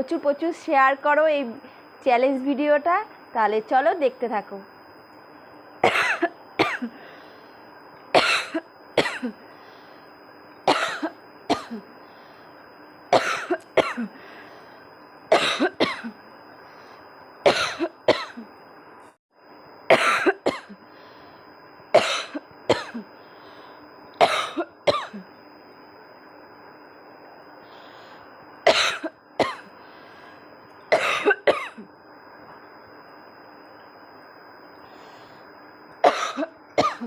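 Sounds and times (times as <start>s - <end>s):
woman coughing: 5.8s - 6.9s, 8.2s - 9.4s, 10.7s - 11.8s, 13.2s - 14.1s, 15.3s - 16.2s, 17.5s - 18.5s, 19.9s - 20.7s, 22.0s - 23.0s, 24.2s - 25.2s, 28.7s - 29.7s, 30.9s - 31.9s, 36.0s - 37.0s.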